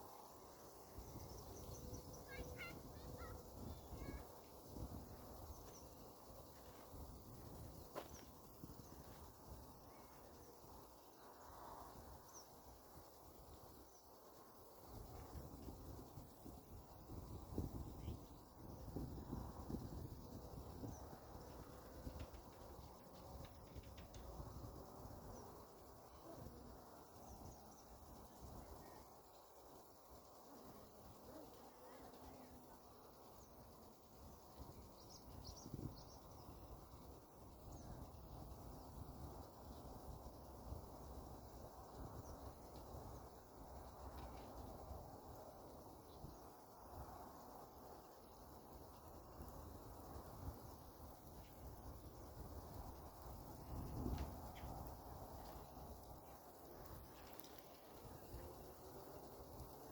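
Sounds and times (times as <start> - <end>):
faint high bird chirps: 0.4 - 6.8, 30.8 - 37.0.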